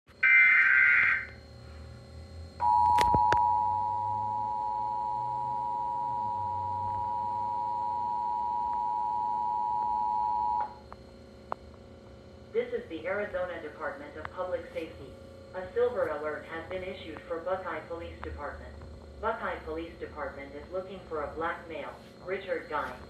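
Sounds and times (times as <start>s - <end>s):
warbling data screech: 0.2s - 1.4s
two-tone attention signal: 2.6s - 10.7s.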